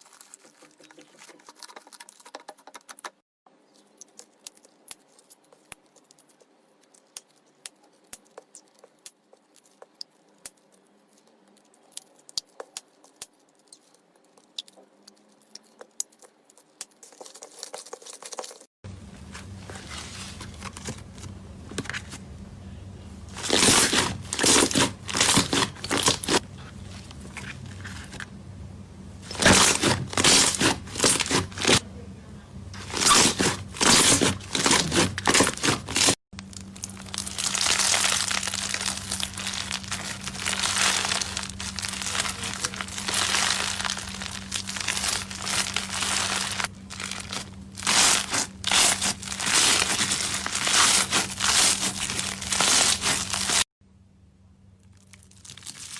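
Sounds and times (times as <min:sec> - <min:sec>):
slime pressed by hand crinkling: 0:32.8 - 0:53.6.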